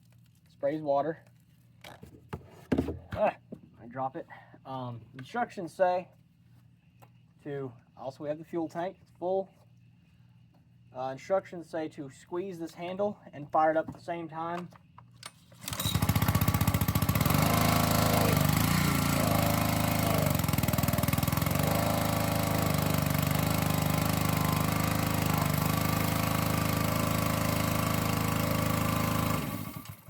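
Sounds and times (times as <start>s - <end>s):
pressure washer engine running: 15.6s - 30.0s.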